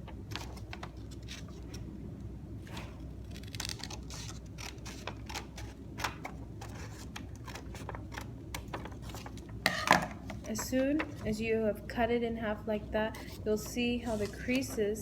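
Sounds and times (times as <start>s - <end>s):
scissors snipping paper: 3.3s - 8.3s
paper rustling: 14.0s - 15.0s.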